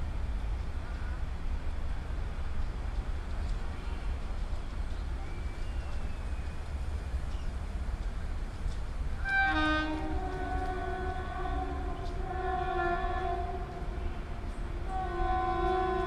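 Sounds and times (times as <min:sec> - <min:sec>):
train rumbling on track: 0:00.0 - 0:16.0
train horn honking: 0:09.2 - 0:16.0.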